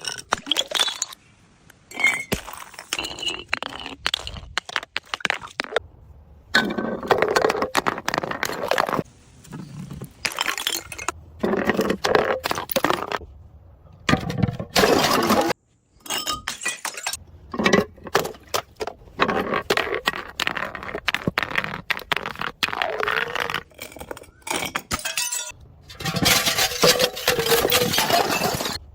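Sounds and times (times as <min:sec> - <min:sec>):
glass bottles smashing: 0:14.7 - 0:17.8, 0:23.8 - 0:28.8.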